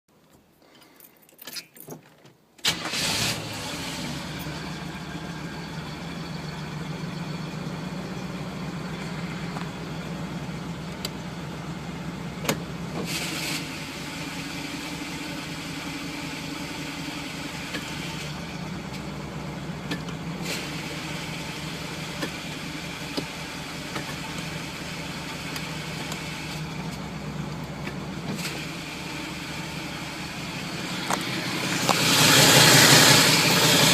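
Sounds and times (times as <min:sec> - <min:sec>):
car engine starting: 0:02.6 - 0:33.9
engine rasps: 0:02.6 - 0:33.9
engine idling with grinding noise: 0:02.7 - 0:33.9.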